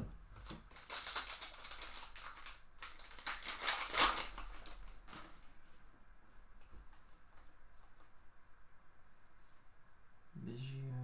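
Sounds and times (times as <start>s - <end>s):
wrapper crinkling: 0.4s - 5.8s.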